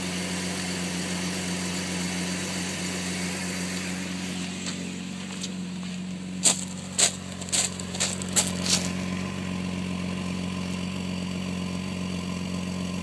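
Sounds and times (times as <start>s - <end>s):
car engine idling roughly: 0.0s - 13.0s.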